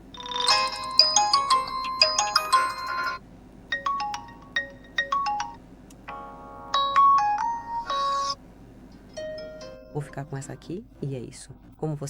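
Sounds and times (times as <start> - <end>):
bell-like ringtone melody: 0.1 - 8.4, 9.2 - 10.5
fuller ringtone: 0.1 - 8.4, 9.2 - 10.5.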